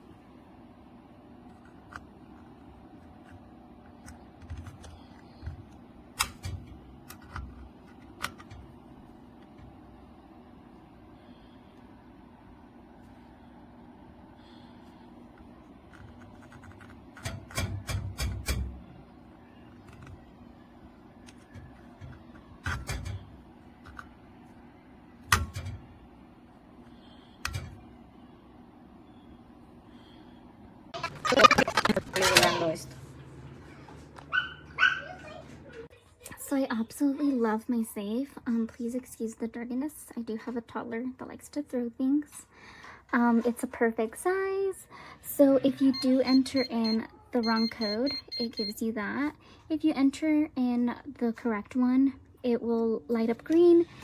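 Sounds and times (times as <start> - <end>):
hard objects clicking and knocking: 31.0 - 32.7.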